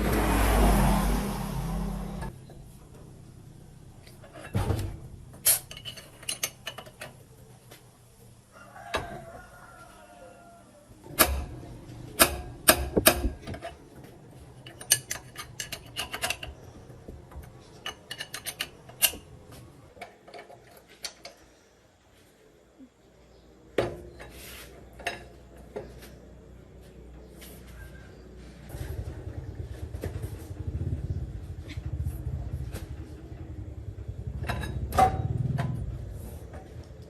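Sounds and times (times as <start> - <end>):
metal tools clinking and clanking: 5.4 - 7.2, 14.6 - 16.6, 17.3 - 19.4.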